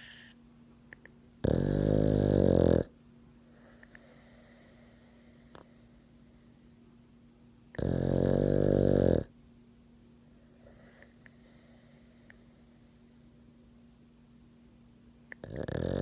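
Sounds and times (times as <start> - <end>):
dog snoring: 1.4 - 6.6, 7.7 - 9.3, 10.4 - 14.0, 15.3 - 16.0.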